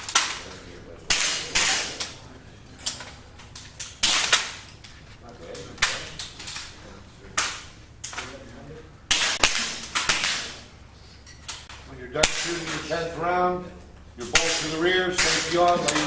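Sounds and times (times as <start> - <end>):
air rifles firing: 0.0 - 2.2, 3.7 - 4.8, 9.1 - 10.8, 11.6 - 13.1, 14.2 - 16.0.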